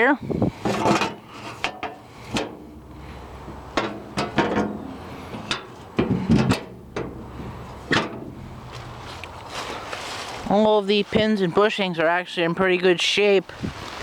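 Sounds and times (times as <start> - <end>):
metal panel knocks and clunks: 0.6 - 2.8, 3.5 - 8.4.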